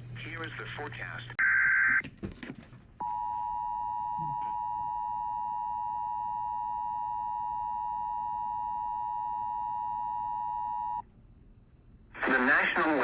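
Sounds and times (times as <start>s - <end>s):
single-pitched alarm tone: 3.0s - 11.0s.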